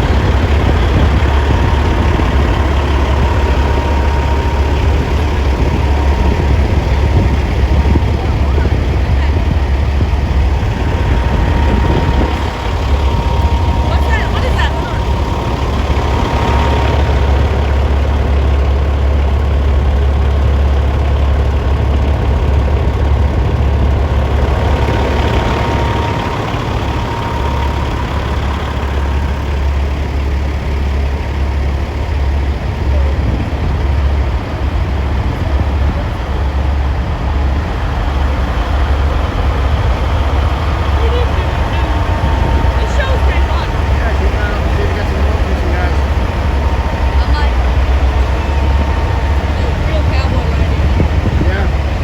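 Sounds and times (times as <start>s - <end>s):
diesel truck engine idling: 0.0s - 52.0s.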